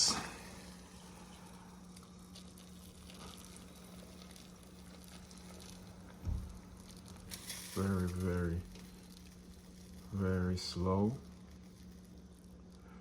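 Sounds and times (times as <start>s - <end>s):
steady low hum: 0.0s - 13.0s
water heating hiss: 0.0s - 13.0s
soft thump: 6.2s - 6.5s.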